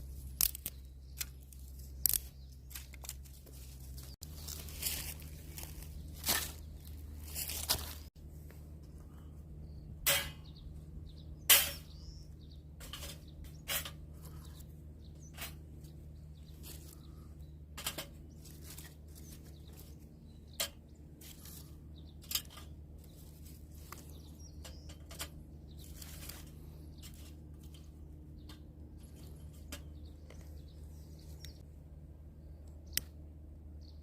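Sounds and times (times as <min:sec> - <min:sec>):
steady low hum: 0:00.0 - 0:34.0
wood cracking and snapping: 0:00.2 - 0:03.3.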